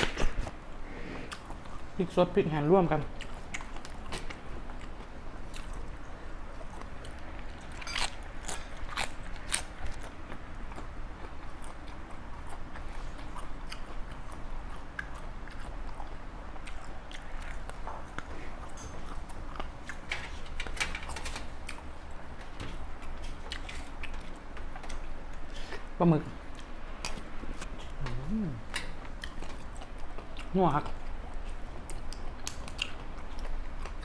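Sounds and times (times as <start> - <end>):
person chewing crunchy food: 3.1 - 20.1, 22.9 - 34.0.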